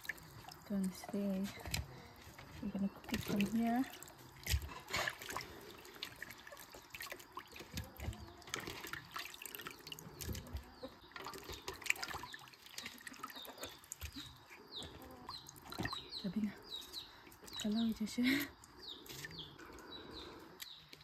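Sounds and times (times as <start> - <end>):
small splashes: 0.0 - 14.4, 15.3 - 16.3
water trickling and dripping: 0.0 - 19.9.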